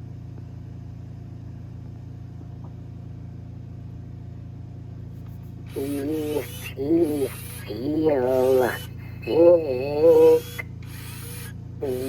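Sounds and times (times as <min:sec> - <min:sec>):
steady low hum: 0:04.2 - 0:12.0.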